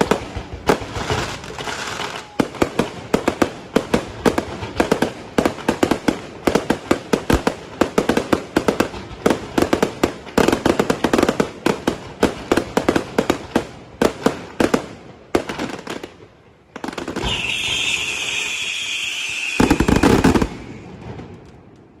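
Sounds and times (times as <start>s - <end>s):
fireworks bangs and crackles: 0.0s - 22.0s
loud firework blast: 17.0s - 21.4s
firework hissing and whistling: 17.2s - 21.0s.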